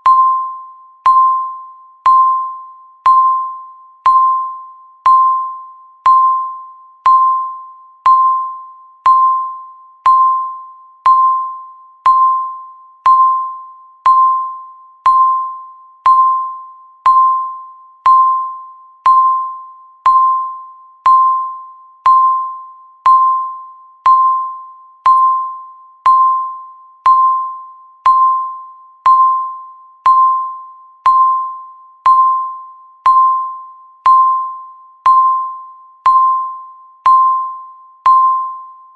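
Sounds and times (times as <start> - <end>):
countdown timer beeping: 0.0 - 38.8.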